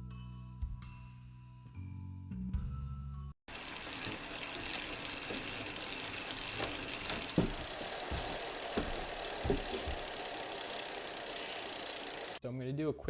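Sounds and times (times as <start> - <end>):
bicycle hub ratcheting clicks: 3.5 - 12.4.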